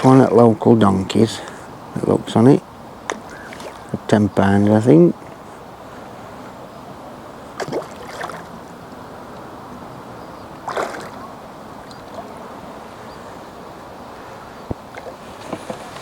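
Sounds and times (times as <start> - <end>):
lake water noise: 0.0 - 16.0
wind: 0.0 - 16.0
sharp water splashing: 3.1 - 3.9, 7.6 - 8.6, 10.6 - 11.3.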